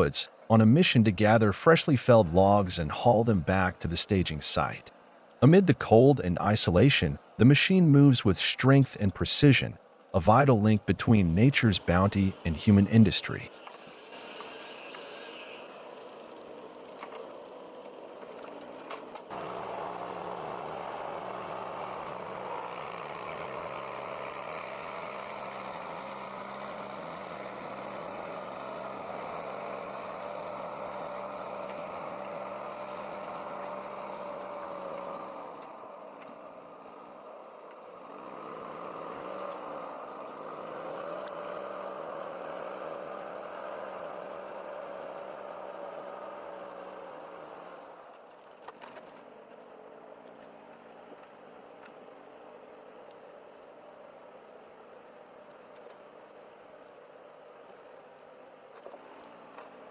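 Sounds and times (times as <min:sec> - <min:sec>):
vehicle engine running: 0:19.2 - 0:48.0.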